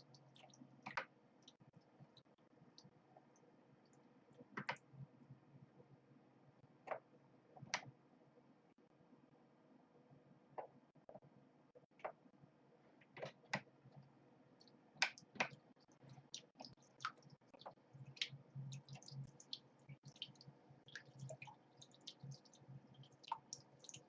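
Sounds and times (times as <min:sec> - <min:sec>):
faint irregular clicks: 0:00.0 - 0:05.9, 0:06.8 - 0:08.0, 0:12.9 - 0:24.0
water pump low hum: 0:15.5 - 0:24.0.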